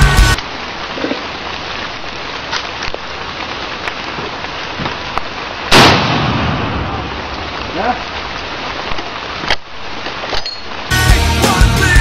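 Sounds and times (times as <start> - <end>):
background hiss: 0.0 - 12.0
rifle shot: 5.7 - 6.9.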